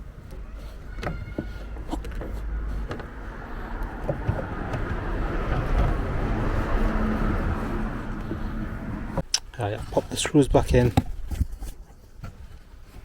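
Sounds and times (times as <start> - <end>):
car passing: 2.3 - 9.2.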